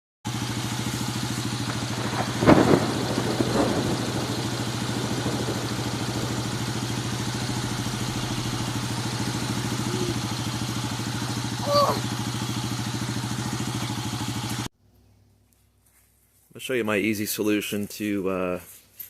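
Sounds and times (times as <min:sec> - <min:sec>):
small engine idling: 0:00.3 - 0:14.7.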